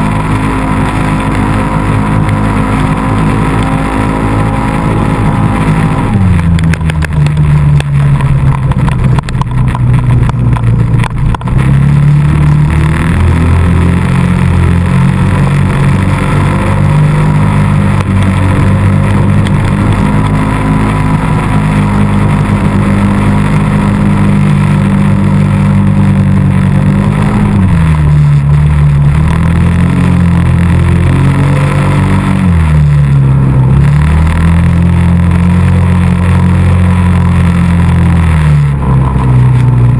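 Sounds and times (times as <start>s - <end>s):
atv engine revving: 0.0s - 39.9s
knocks and rattles: 6.4s - 12.8s.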